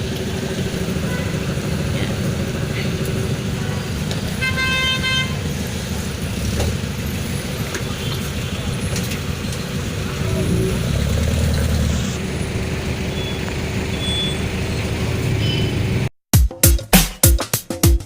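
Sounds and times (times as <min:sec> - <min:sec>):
street traffic engine rumble: 0:00.0 - 0:16.1
vehicle horn honk: 0:01.0 - 0:01.5, 0:04.4 - 0:05.5.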